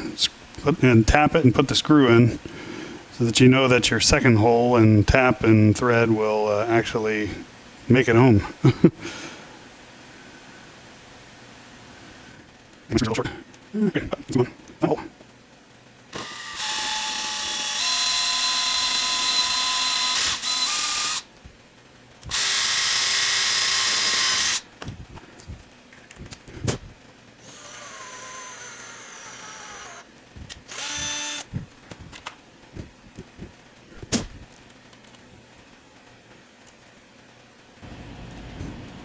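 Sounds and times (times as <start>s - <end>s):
electric drill drilling metal: 16.1s - 21.3s, 22.2s - 24.6s, 27.4s - 31.5s.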